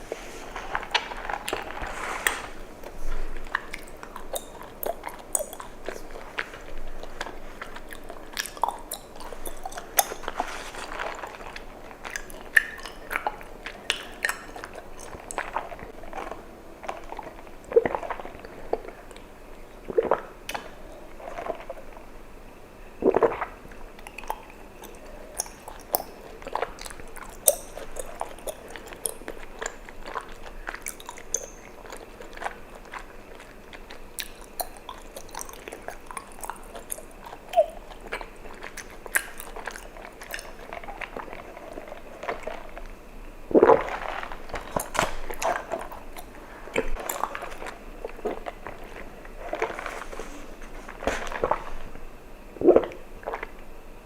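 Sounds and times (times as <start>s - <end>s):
chewing sticky tapioca pearls: 0.0s - 53.8s
gulping: 24.1s - 42.7s.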